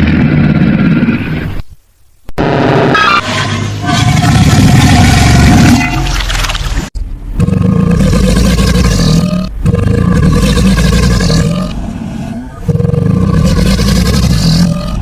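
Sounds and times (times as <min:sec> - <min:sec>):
alligator bellowing: 0:07.4 - 0:15.0.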